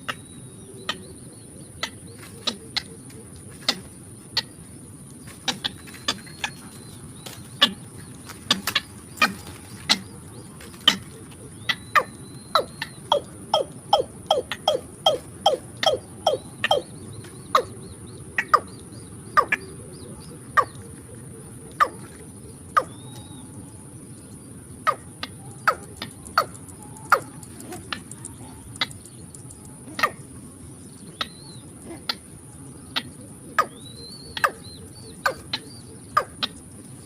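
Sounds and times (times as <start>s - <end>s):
insects whining: 0.0s - 37.0s
bird calling in sharp notes: 5.3s - 17.8s, 32.9s - 36.6s.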